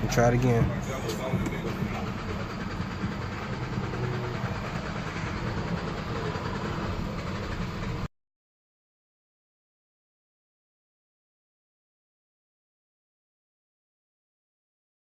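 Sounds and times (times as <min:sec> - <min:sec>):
car engine running: 0:00.0 - 0:08.1.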